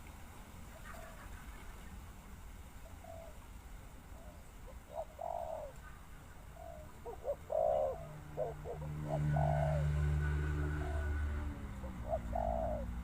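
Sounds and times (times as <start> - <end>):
dove cooing: 2.8 - 3.4, 4.1 - 13.0.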